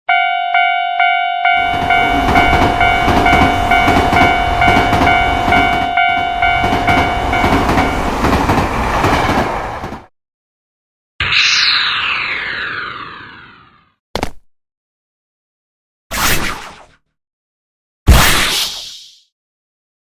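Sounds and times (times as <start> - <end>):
railroad crossing alarm tone: 0.1 - 9.8
train passing with clattering wheels: 1.5 - 10.1.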